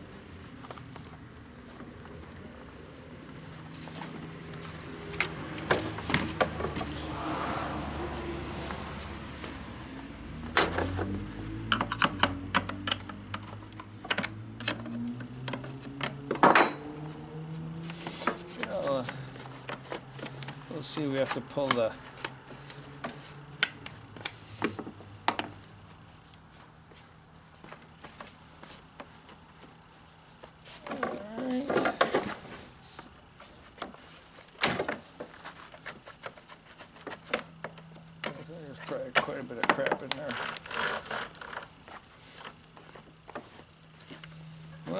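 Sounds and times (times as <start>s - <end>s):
chainsaw being taken apart: 37.3s - 41.8s
chainsaw chain clicking: 40.1s - 41.7s.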